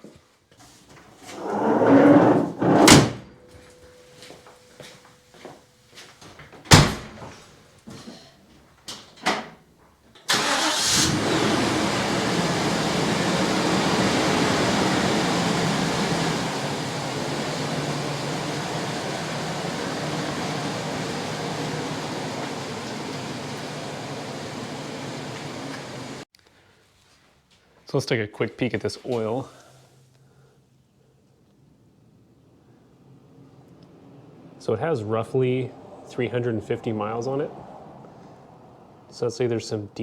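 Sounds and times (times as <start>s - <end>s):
truck engine starting and idling: 10.2s - 26.2s, 32.1s - 40.0s.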